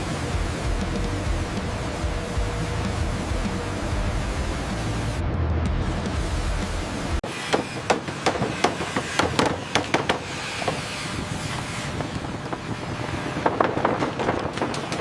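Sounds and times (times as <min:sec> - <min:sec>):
steady mechanical noise: 0:00.0 - 0:15.0
wood and metal knocks and clanks: 0:07.2 - 0:11.0, 0:11.9 - 0:15.0.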